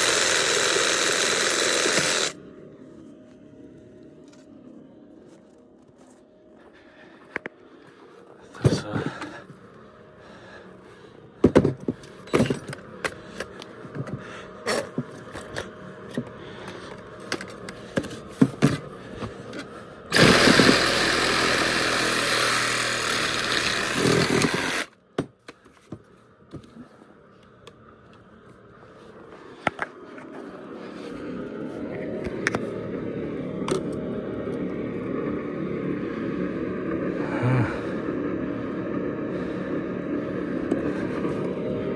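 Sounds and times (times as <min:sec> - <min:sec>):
loud power tool running: 0:00.0 - 0:02.4, 0:20.1 - 0:24.9
tools clattering against metal: 0:11.4 - 0:15.7.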